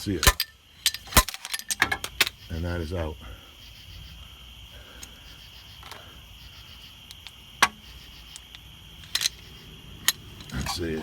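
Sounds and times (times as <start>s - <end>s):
crickets chirping: 0.0s - 11.0s
tools clicking and knocking: 0.2s - 2.3s, 7.1s - 11.0s.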